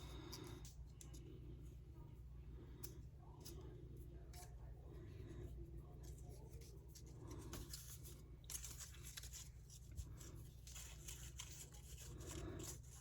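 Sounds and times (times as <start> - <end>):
low steady hum: 0.0 - 13.0
paper rustling and clicking: 6.0 - 13.0.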